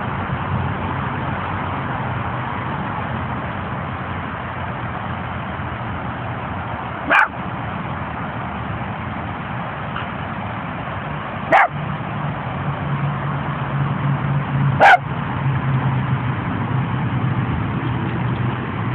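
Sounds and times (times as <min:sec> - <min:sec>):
small dog barking: 0:07.0 - 0:07.4, 0:11.5 - 0:11.8, 0:14.8 - 0:15.0.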